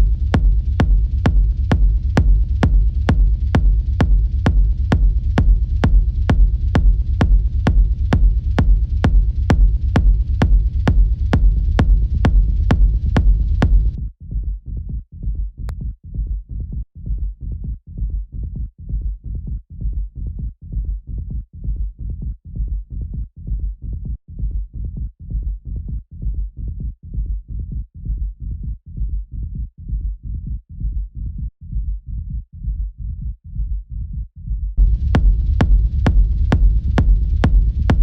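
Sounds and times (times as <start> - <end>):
techno music: 0.0 - 14.0, 34.8 - 38.0.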